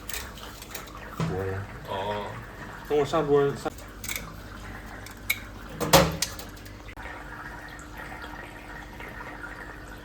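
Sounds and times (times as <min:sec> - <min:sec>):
tap water running into sink: 0:00.0 - 0:10.0
dishes clicking and knocking: 0:05.0 - 0:06.8.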